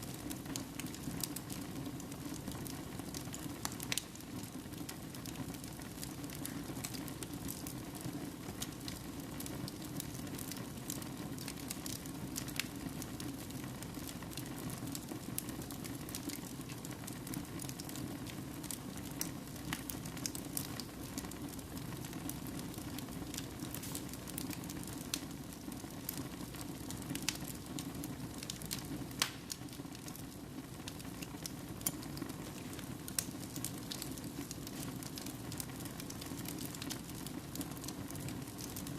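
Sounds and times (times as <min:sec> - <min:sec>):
wood fire crackling: 0:00.0 - 0:38.9.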